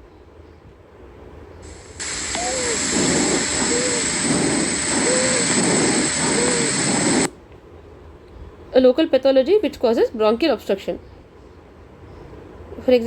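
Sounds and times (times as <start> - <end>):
breath noise: 1.6 - 7.3
recording hiss: 1.6 - 7.3
wheeze in breath: 1.7 - 7.3.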